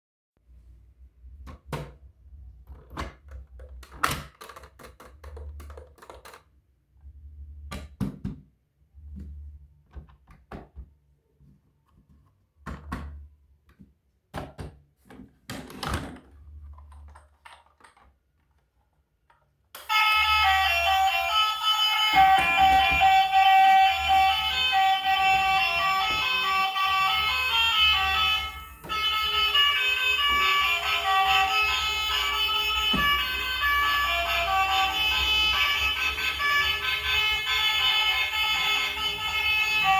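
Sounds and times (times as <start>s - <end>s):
toys and packaging handled: 15.1s - 19.9s.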